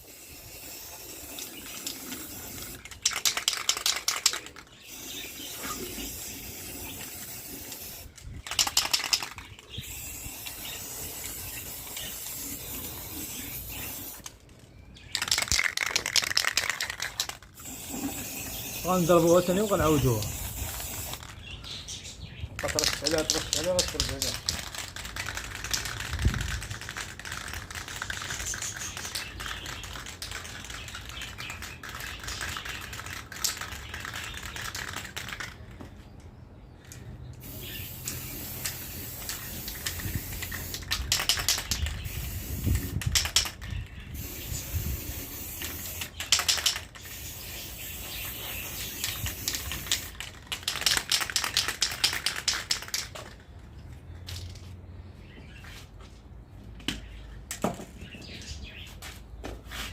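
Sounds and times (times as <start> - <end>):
spray paint hissing: 0.0 - 14.4, 15.1 - 21.8, 22.6 - 35.6, 37.4 - 53.3
clicking and rattling: 2.8 - 4.6, 8.4 - 9.6, 49.0 - 53.4.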